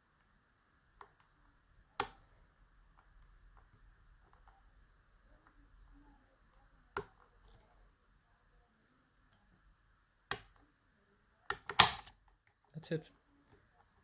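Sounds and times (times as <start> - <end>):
lock pick clicking in padlock: 11.5 - 12.1.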